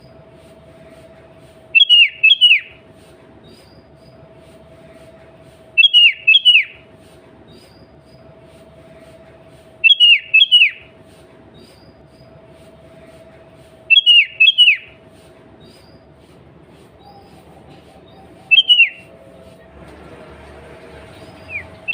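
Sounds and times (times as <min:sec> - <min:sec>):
bird whistled calls: 0:01.8 - 0:02.8, 0:05.8 - 0:06.9, 0:09.8 - 0:10.9, 0:13.9 - 0:15.0, 0:17.0 - 0:19.2, 0:21.2 - 0:21.9.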